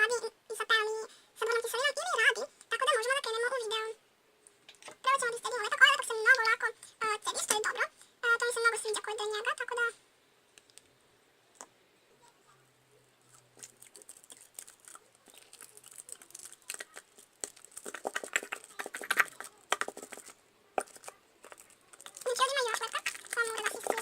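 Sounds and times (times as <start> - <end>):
plastic glue bottle crackling: 13.3 - 24.0.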